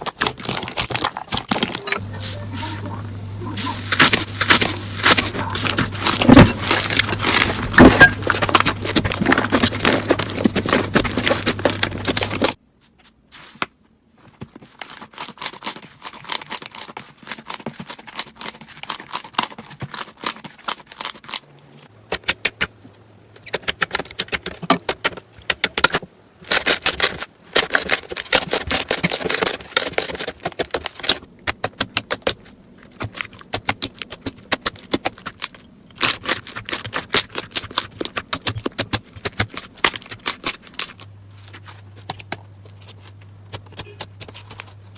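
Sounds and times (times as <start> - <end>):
crunchy slime crackling: 0.0 - 12.6, 26.4 - 44.9.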